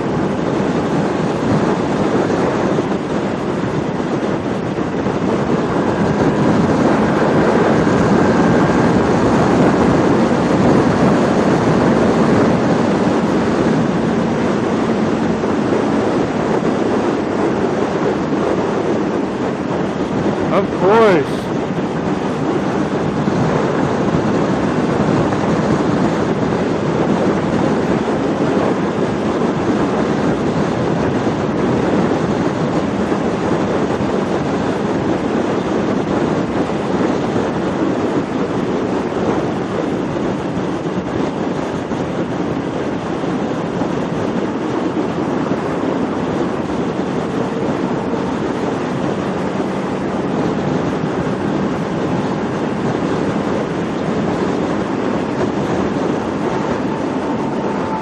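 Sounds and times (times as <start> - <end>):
motorcycle engine running: 0.0 - 20.5
wind rush over microphone: 0.0 - 58.0.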